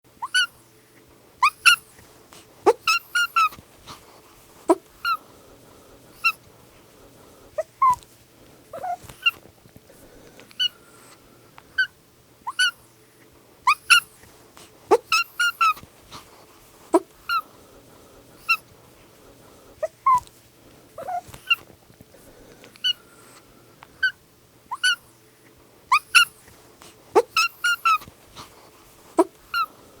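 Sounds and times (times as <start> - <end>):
faint steady hum: 0.1 - 30.0
kitten mewing: 1.4 - 4.0, 7.5 - 8.0, 8.7 - 9.4, 13.7 - 16.3, 19.8 - 20.3, 21.0 - 21.7, 25.9 - 29.8.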